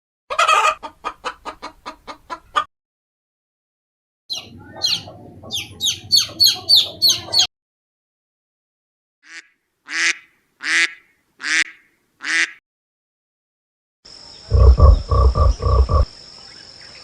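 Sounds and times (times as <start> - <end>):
duck quacking: 9.2 - 12.6, 14.5 - 16.0
high insect buzz: 14.1 - 16.2
quick low calls: 14.5 - 16.1.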